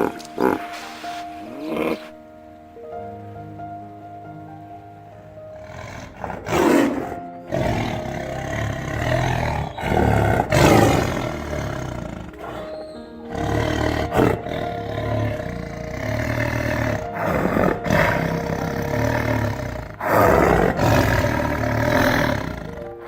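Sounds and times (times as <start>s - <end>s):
background music: 0.0s - 23.0s
large animal roaring and growling: 5.5s - 23.0s.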